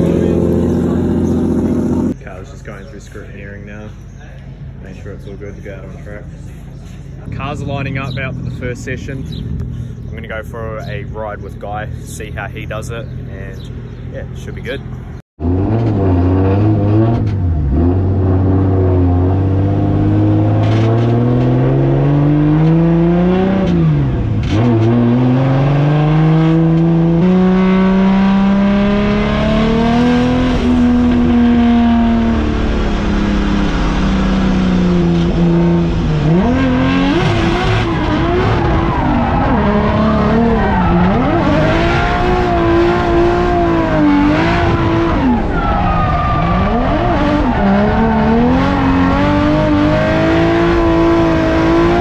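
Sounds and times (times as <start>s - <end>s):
car engine revving hard: 15.4s - 52.0s.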